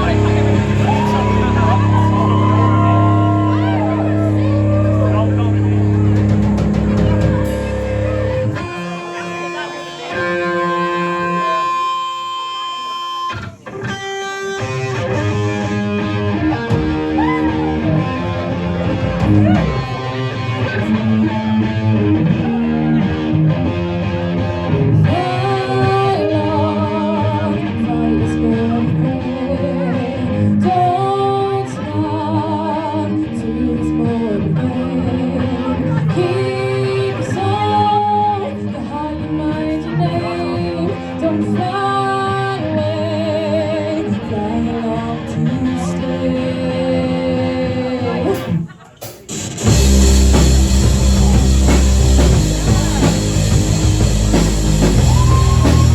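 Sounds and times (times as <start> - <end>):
held electric guitar chord: 0.0 - 12.2
live rock band playing: 0.0 - 31.1, 48.1 - 55.9.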